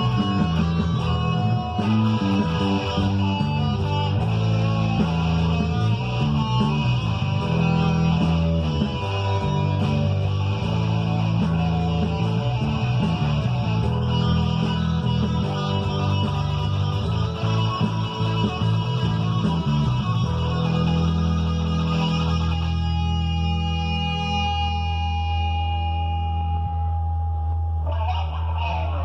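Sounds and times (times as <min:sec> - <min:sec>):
guitar playing: 0:00.0 - 0:29.0
rock backing track with bass: 0:00.0 - 0:29.0.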